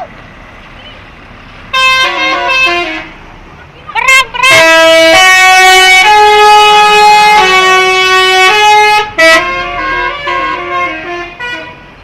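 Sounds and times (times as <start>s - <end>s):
bus musical horn playing a tune: 1.7s - 3.3s, 4.0s - 12.0s.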